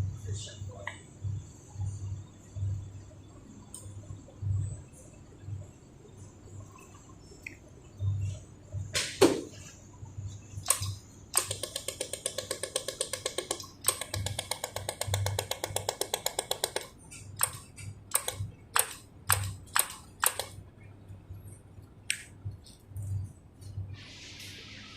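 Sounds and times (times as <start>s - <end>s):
laser welder clicks: 10.6s - 20.6s.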